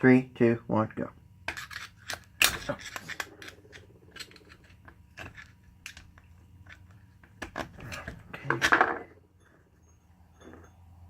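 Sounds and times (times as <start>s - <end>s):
screwdriver scraping metal: 1.5s - 8.1s
small metal clicks: 1.5s - 8.7s.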